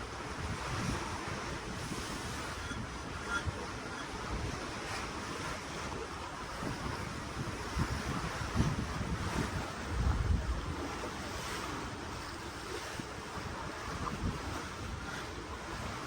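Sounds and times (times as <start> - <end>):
ocean water rushing and splashing: 0.0 - 16.0
wind buffeting microphone: 0.0 - 16.0.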